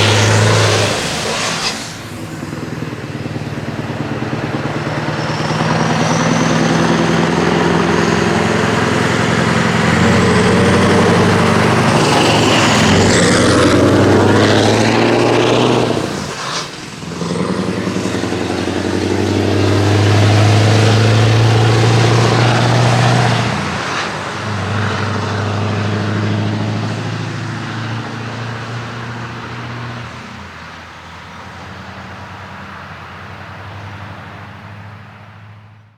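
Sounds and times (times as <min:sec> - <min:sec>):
truck engines pulling away: 0:00.0 - 0:35.9.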